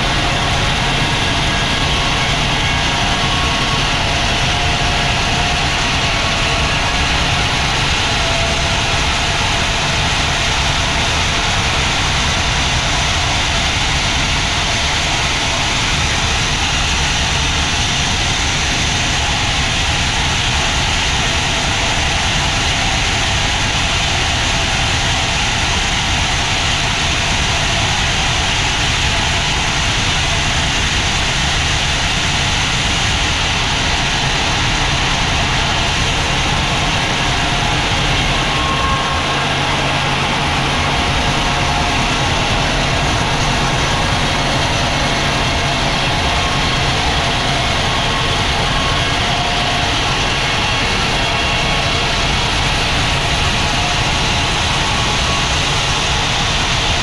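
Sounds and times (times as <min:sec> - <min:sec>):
low engine drone: 0:00.0 - 0:57.0.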